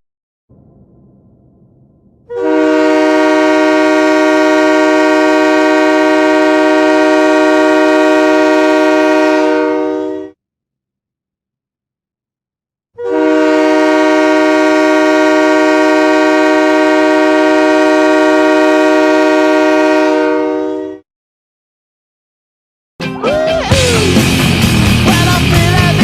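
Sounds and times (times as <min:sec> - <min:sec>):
goal horn blast: 0:02.3 - 0:10.4, 0:13.0 - 0:21.0.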